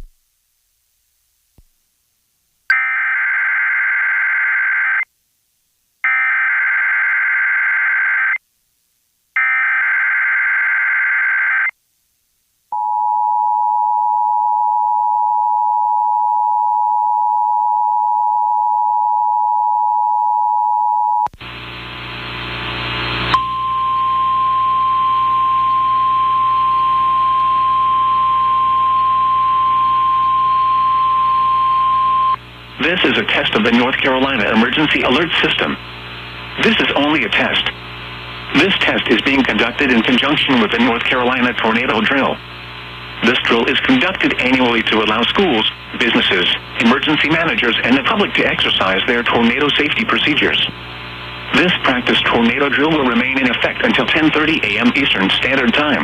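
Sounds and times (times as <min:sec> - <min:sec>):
hummy noisy relayed feed: 0:21.4 - 0:56.0.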